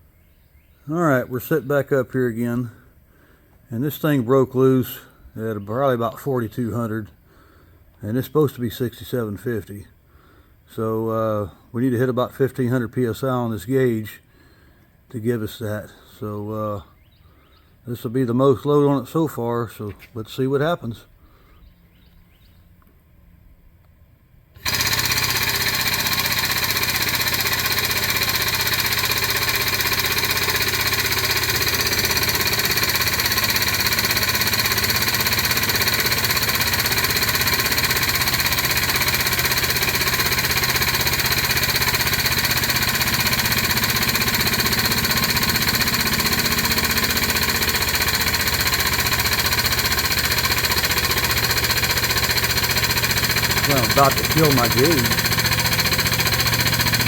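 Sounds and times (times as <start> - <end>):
hydraulic pump running: 24.6 - 57.0.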